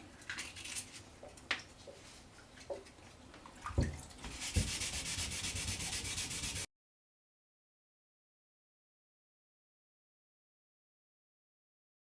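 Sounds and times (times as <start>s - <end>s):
sandpaper sanding wood: 4.3s - 6.7s.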